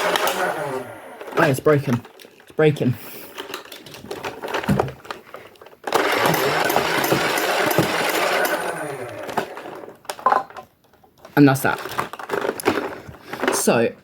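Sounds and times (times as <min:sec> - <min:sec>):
motorized toy blaster whirring: 0:05.9 - 0:09.7.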